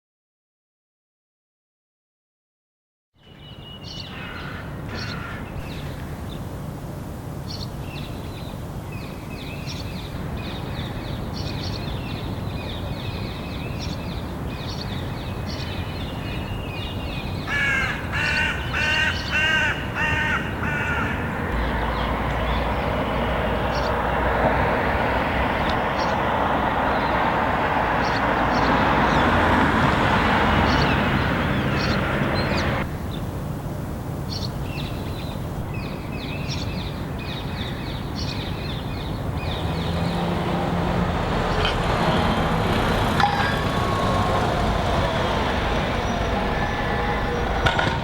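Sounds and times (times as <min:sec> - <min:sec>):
rumble of city traffic: 0:03.2 - 0:48.0
woodpecker chicks calling: 0:41.2 - 0:46.4.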